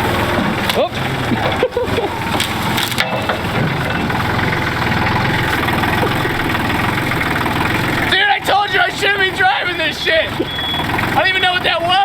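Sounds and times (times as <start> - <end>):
vehicle engine running: 0.0 - 12.0
wood crunching and cracking: 0.3 - 11.2
sharp knocks: 2.4 - 7.5.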